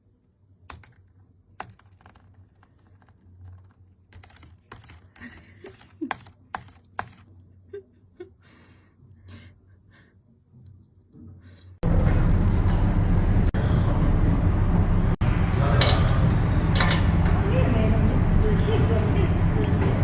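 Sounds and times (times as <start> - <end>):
parrot clicking and tapping: 0.7 - 7.3.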